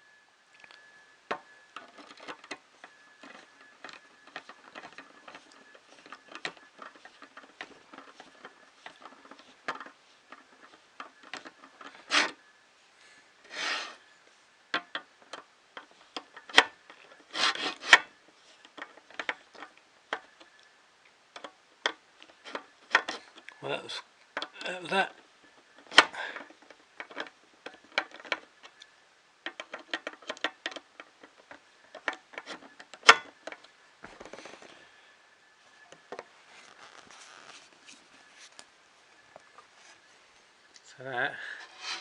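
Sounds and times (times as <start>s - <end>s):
faint steady high tone: 0.0s - 26.6s, 31.5s - 41.8s
metal scraping: 1.8s - 12.5s, 13.4s - 14.2s, 15.3s - 19.7s.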